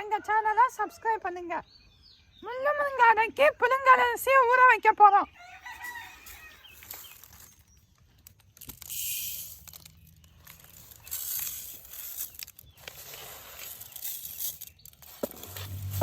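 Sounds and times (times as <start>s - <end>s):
dry rice rustling: 5.7s - 16.0s.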